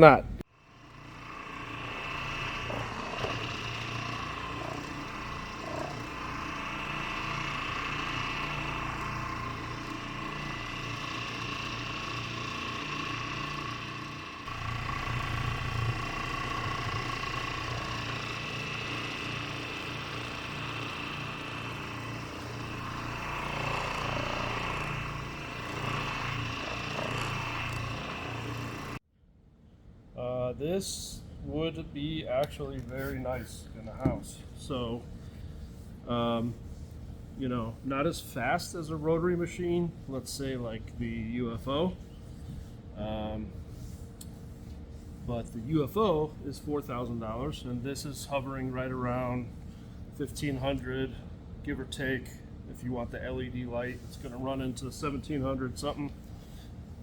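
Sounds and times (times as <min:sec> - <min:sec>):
orbital polisher humming and whining: 0:00.7 - 0:29.0.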